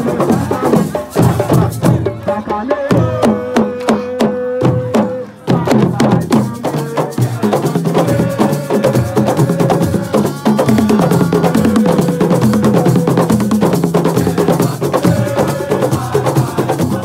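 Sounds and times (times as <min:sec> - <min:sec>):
drum ensemble playing fast rhythm: 0:00.0 - 0:17.0.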